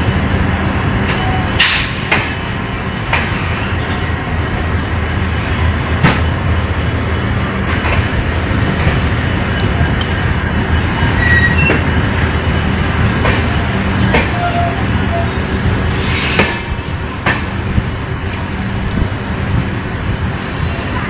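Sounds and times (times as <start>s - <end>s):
train rumbling on track: 0.0s - 21.0s
faint high wheel squeaks: 10.5s - 11.8s.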